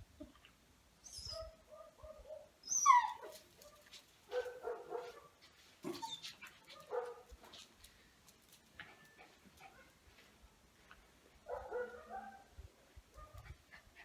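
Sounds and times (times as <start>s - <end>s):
dog whining and whimpering: 1.0s - 1.6s, 2.6s - 3.4s, 5.9s - 6.4s
dog yelping: 1.1s - 3.8s, 5.9s - 7.2s.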